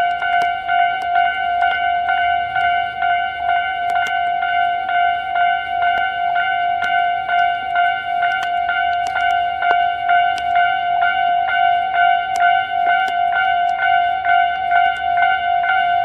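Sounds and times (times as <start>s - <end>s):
level crossing warning bell: 0.0s - 16.0s.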